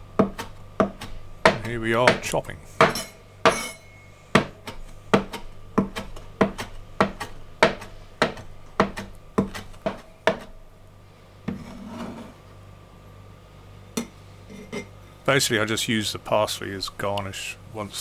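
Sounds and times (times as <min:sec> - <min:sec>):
knife chopping on a board: 0:00.1 - 0:10.7.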